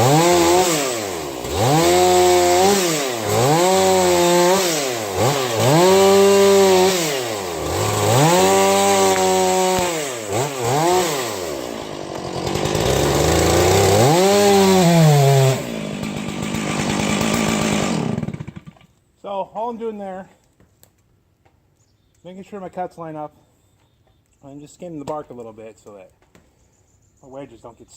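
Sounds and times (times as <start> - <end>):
chainsaw revving and cutting bark: 0.0 - 18.9.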